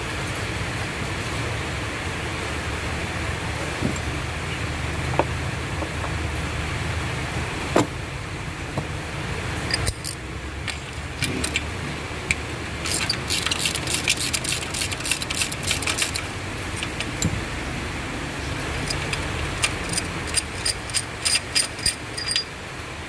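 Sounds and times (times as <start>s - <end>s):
steady low hum: 0.0s - 23.0s
metal tools clinking: 3.8s - 4.2s, 9.7s - 17.6s, 18.4s - 22.6s
ratchet clicking: 9.7s - 17.5s, 18.4s - 22.5s.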